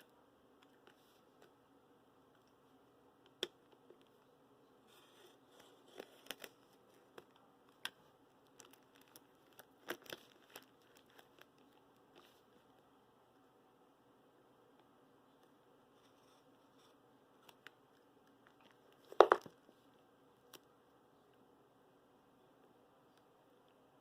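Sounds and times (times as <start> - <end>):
packaging crinkling: 5.6 - 12.4.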